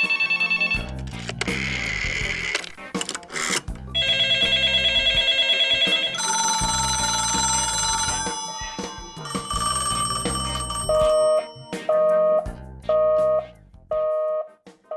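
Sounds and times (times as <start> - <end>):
telephone bell ringing: 0.0 - 1.0, 4.0 - 12.3
background music: 0.0 - 14.8.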